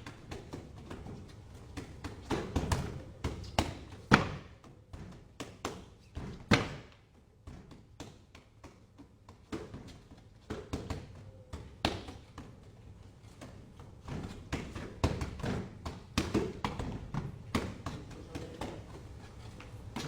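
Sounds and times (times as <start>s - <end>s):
punches landing with slaps and thuds: 1.8s - 8.7s, 14.0s - 18.7s.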